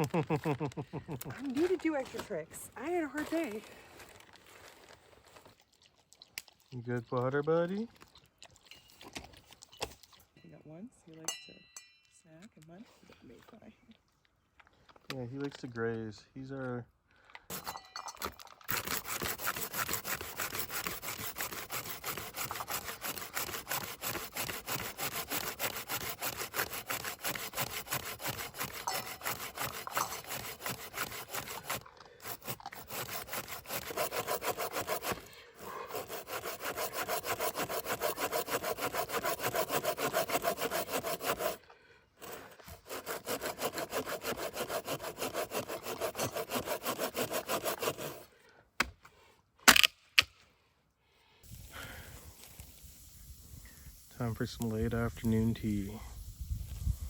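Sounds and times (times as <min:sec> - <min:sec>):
hand saw cutting wood: 0:01.3 - 0:03.5, 0:17.5 - 0:48.4.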